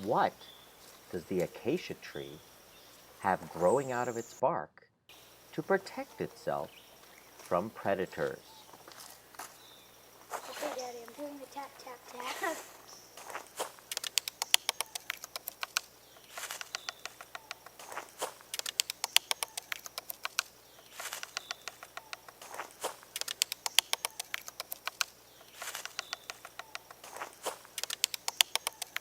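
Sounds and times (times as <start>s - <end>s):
quick light taps on branch: 13.2s - 29.0s.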